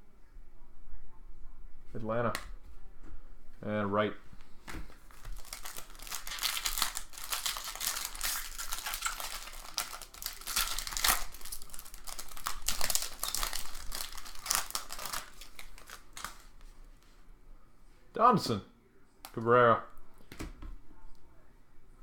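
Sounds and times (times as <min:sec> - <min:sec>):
plastic wrapper crinkling and tearing: 0:04.9 - 0:16.7.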